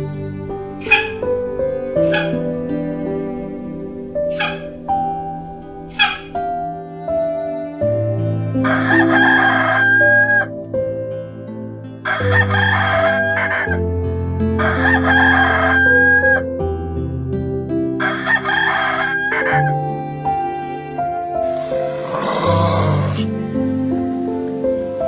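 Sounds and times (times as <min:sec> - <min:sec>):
soft background music: 0:00.0 - 0:25.0
rooster crowing: 0:00.8 - 0:01.2, 0:02.0 - 0:02.4, 0:04.3 - 0:04.7, 0:06.0 - 0:06.4, 0:08.7 - 0:10.5, 0:12.1 - 0:13.7, 0:14.6 - 0:16.4, 0:18.0 - 0:19.7.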